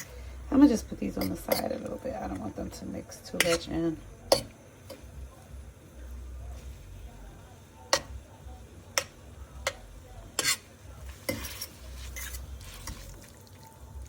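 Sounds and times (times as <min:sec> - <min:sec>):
metal fork clinking against pan: 0:01.1 - 0:01.8, 0:04.3 - 0:05.0, 0:09.0 - 0:09.8, 0:10.4 - 0:10.7, 0:11.3 - 0:13.1.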